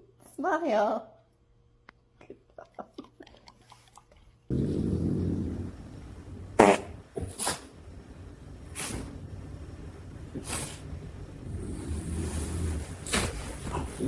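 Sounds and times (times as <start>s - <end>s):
dog farting: 6.5s - 7.7s, 11.5s - 14.0s.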